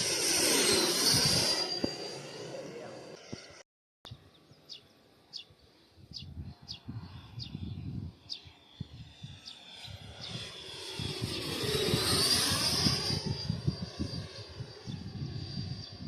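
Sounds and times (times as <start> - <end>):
model jet fan whine: 0.0 - 3.6, 5.6 - 16.0.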